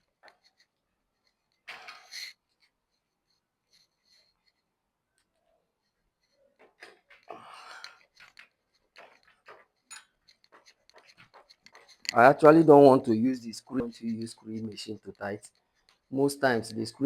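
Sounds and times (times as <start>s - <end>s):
screwdriver clicks and scraping: 1.3s - 2.4s, 6.8s - 12.2s.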